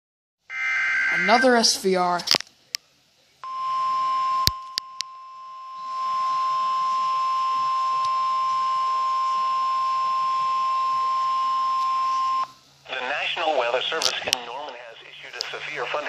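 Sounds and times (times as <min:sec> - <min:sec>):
weather radio alarm beep: 0:00.5 - 0:01.7, 0:03.4 - 0:12.5.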